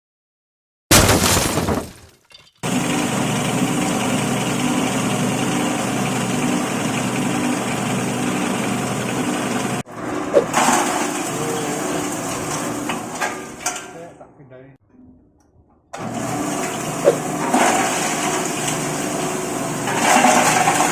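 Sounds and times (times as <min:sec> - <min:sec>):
grinding machine motor hum: 0:02.6 - 0:09.8.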